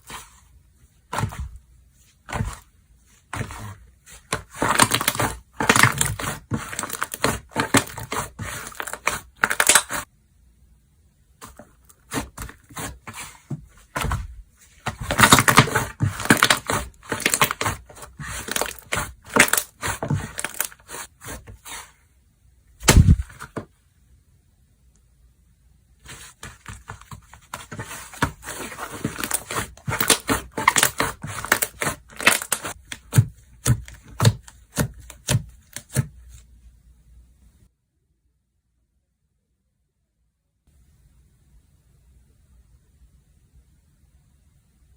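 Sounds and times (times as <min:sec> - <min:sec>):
slime crackling and popping: 0:04.5 - 0:10.0, 0:28.9 - 0:33.0
low thud: 0:22.8 - 0:23.4.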